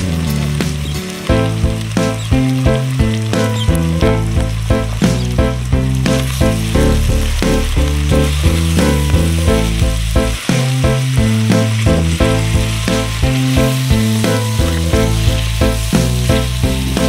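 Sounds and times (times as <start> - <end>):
food sizzling in a pot: 0.0 - 17.0
instrumental music with bass line: 0.0 - 17.0.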